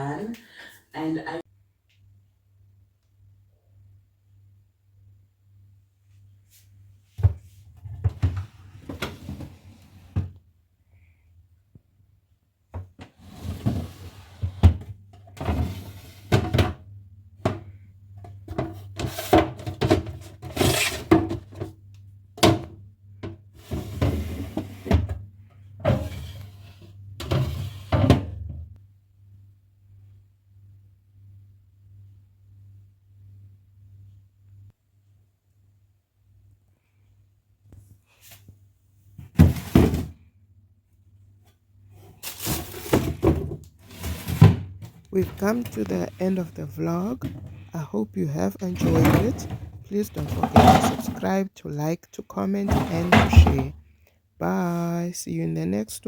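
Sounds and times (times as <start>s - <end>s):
household objects clattering: 48.5s - 51.4s, 52.6s - 53.8s.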